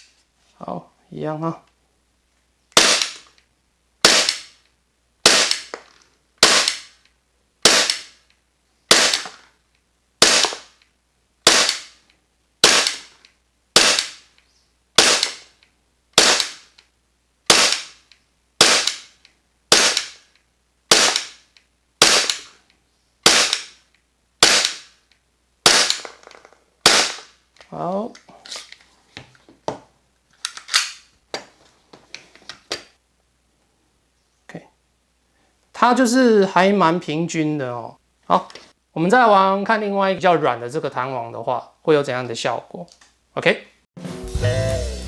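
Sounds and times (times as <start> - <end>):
airsoft pistol shots: 2.8 - 3.2, 4.0 - 4.6, 5.2 - 5.8, 6.4 - 7.0, 7.6 - 8.2, 8.9 - 9.4, 10.2 - 10.8, 11.4 - 12.0, 12.6 - 13.1, 13.8 - 14.3, 15.0 - 15.5, 16.2 - 16.7, 17.5 - 18.0, 18.6 - 20.2, 20.9 - 21.4, 22.0 - 22.5, 23.2 - 23.8, 24.4 - 25.0, 25.6 - 26.2, 26.8 - 27.4.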